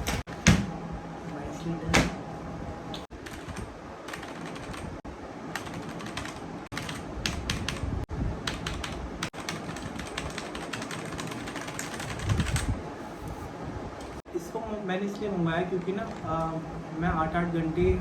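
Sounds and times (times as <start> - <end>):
low thuds on desk: 0.0 - 0.8
mechanical keyboard keys clacking: 3.2 - 4.9, 5.6 - 7.9, 8.5 - 12.7.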